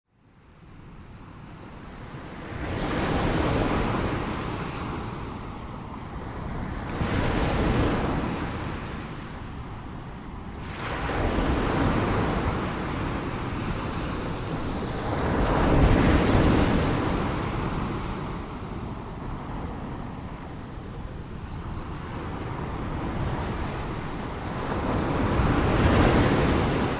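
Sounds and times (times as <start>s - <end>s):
ocean waves breaking: 1.8s - 26.9s.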